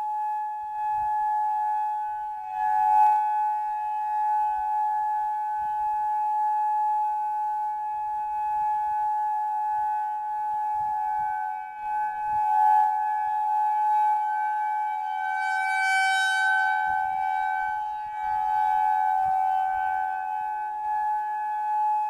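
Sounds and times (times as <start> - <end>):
steady warning siren: 0.0 - 22.0.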